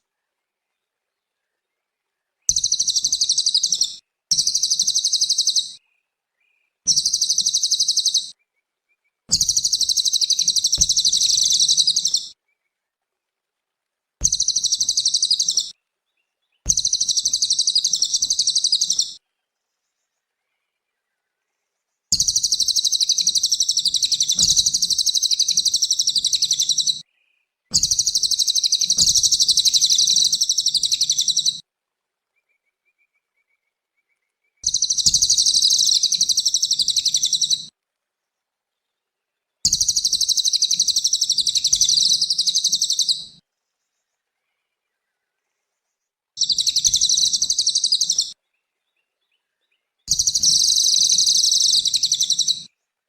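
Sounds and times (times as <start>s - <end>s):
bird rapid high chattering song: 2.5s - 5.8s, 6.9s - 8.3s, 9.3s - 12.3s, 14.2s - 15.7s, 16.7s - 19.2s, 22.2s - 27.0s, 27.7s - 31.6s, 34.6s - 37.7s, 39.7s - 43.3s, 46.4s - 48.4s, 50.1s - 52.7s.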